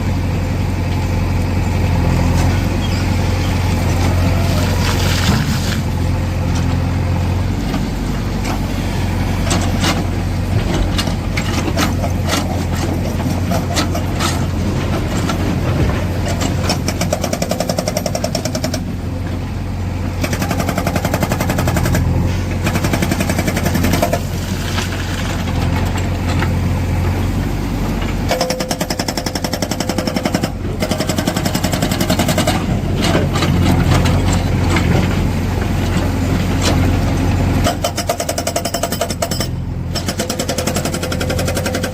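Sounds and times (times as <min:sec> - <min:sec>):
diesel engine under load: 0:00.0 - 0:41.9
hydraulic rock breaker hammering: 0:10.8 - 0:18.9, 0:20.2 - 0:26.2, 0:28.3 - 0:35.0, 0:37.6 - 0:41.9.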